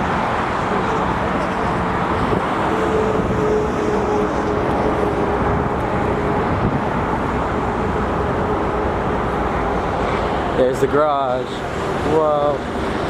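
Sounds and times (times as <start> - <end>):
road traffic rumble: 0.0 - 13.0.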